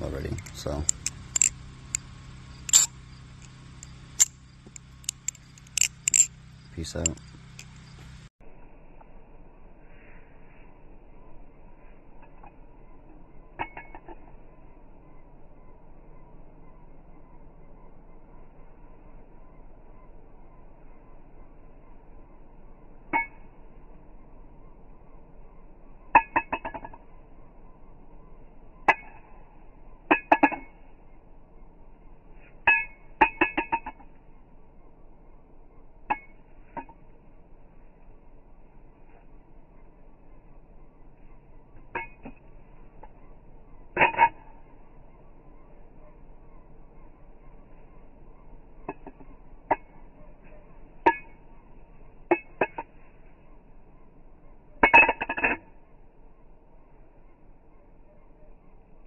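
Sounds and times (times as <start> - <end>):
balisong metal clacks: 0.0 - 8.3, 12.2 - 14.3, 26.1 - 27.2, 28.8 - 30.9, 32.3 - 34.6, 35.8 - 37.2, 41.2 - 48.0, 48.8 - 53.4, 54.6 - 56.0
butterfly knife handles clicking: 0.1 - 8.0, 52.3 - 52.9.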